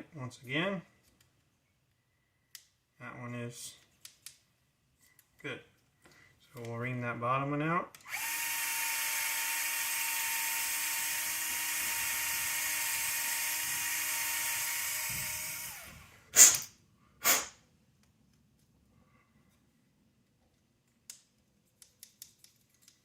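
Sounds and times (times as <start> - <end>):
electric drill running: 8.1 - 16.6.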